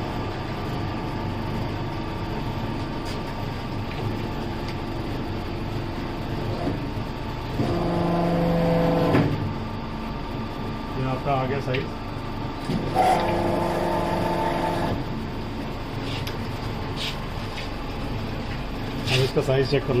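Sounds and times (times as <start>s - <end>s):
loud steady hum: 0.0s - 20.0s
hydraulic pump running: 6.4s - 9.6s, 12.5s - 19.4s.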